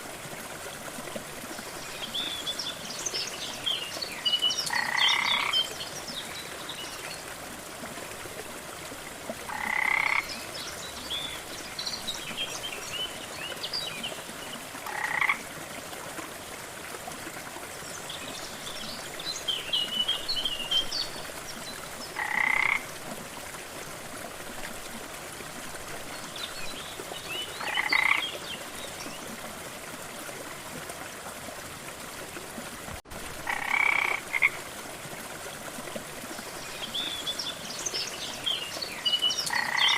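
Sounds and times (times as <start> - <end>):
frog croaking: 4.7 - 5.6, 9.5 - 10.3, 14.8 - 15.4, 22.2 - 22.8, 27.6 - 28.2, 33.4 - 34.6, 39.5 - 39.9.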